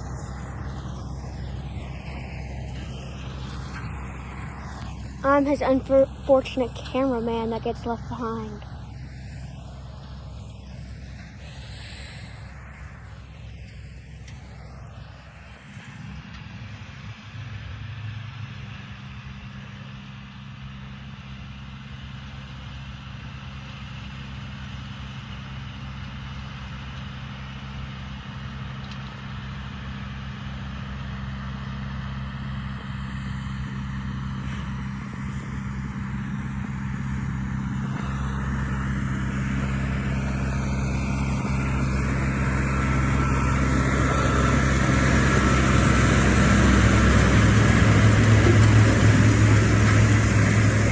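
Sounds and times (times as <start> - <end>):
tractor diesel engine running: 0.0 - 50.9
hay baler mechanical clatter: 27.8 - 50.9.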